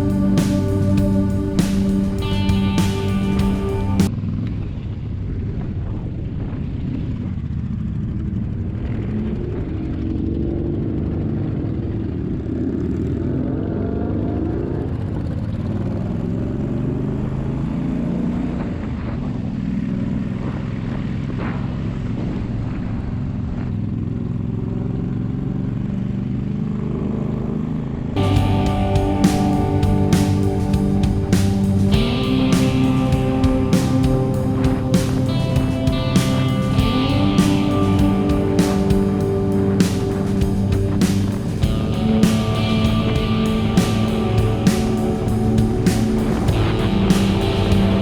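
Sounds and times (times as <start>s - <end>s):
motorcycle engine revving: 28.2s - 48.0s.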